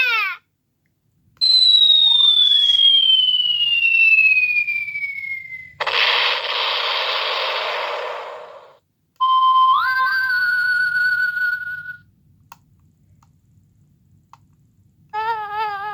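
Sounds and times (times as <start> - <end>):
explosion effect: 5.8 - 8.8
whistle falling in pitch: 9.2 - 12.0.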